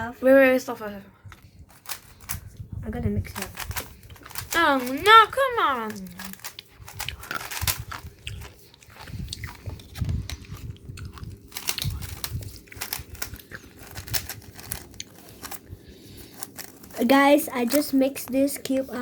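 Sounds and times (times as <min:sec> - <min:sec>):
puzzle cube clicking: 0:03.4 - 0:05.2, 0:05.8 - 0:08.0.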